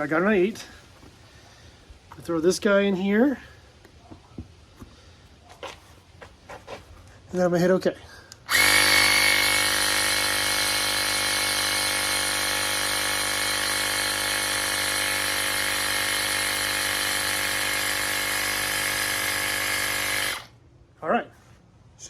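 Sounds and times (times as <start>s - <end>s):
electric air compressor humming: 8.5s - 20.5s.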